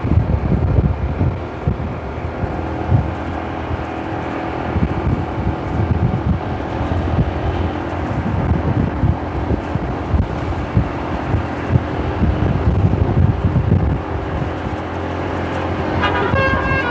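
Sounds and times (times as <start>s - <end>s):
vehicle engine running: 0.0s - 16.9s
wind buffeting microphone: 0.0s - 16.9s.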